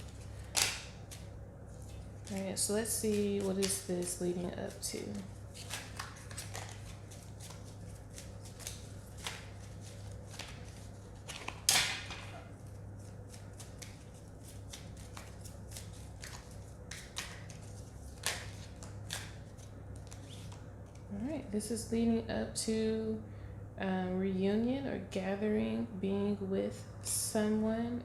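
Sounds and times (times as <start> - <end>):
cards shuffling and rustling: 0.0 - 21.1
steady low hum: 0.0 - 28.0.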